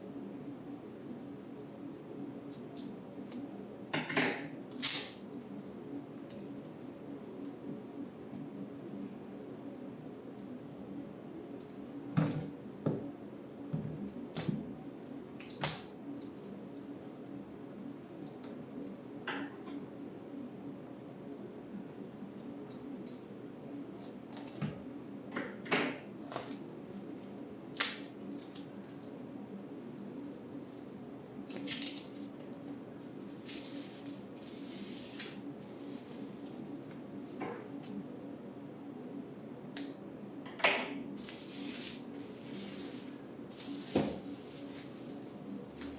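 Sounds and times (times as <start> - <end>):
steady low hum: 0.0 - 45.9
rustling handling noise: 29.9 - 38.0, 41.2 - 45.9.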